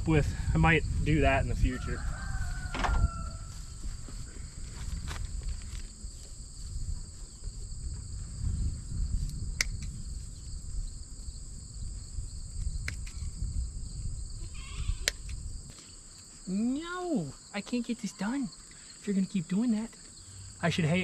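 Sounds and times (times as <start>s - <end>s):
high-pitched insect chorus: 0.0s - 21.0s
sharp clicks: 12.8s - 13.3s.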